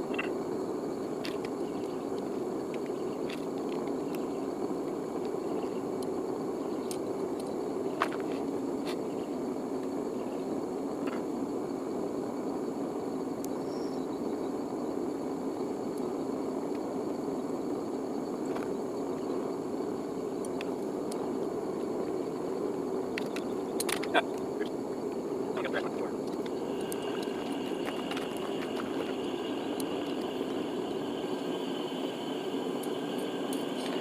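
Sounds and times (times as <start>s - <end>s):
faint ticks and clicks: 6.8s - 9.0s, 20.4s - 21.3s, 26.2s - 30.4s
furnace burner rushing: 14.9s - 34.0s.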